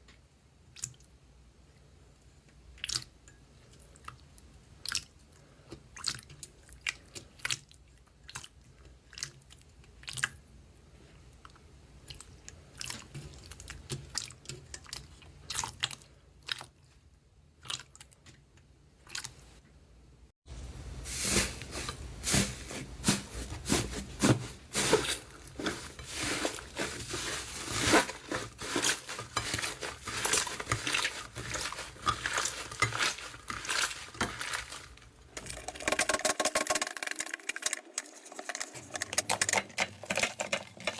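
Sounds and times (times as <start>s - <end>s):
slime crackling and popping: 24.8s - 37.6s.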